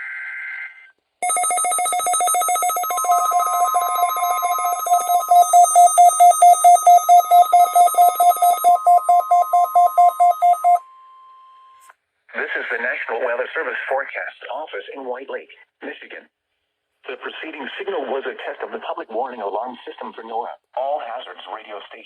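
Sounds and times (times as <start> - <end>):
rapid alarm beeping: 1.2 - 10.8
steady alarm tone: 1.2 - 10.8.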